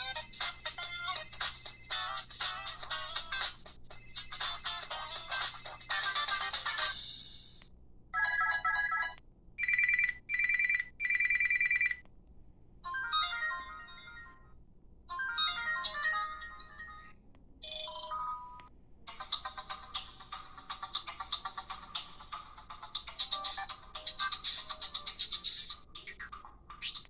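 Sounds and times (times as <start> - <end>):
pulsed ringtone beeps: 0.0 - 7.0, 8.2 - 12.0, 12.8 - 14.5, 15.1 - 26.9
electronic ringtone tunes: 0.0 - 7.1, 8.2 - 12.0, 12.9 - 14.5, 15.1 - 18.6.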